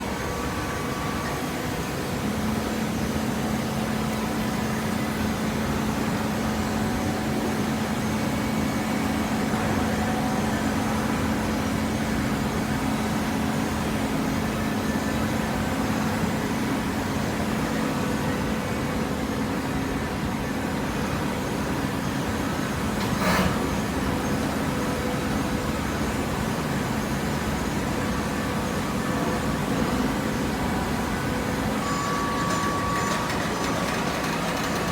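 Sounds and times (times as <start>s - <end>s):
hydraulic baler motor humming: 28.8s - 34.9s.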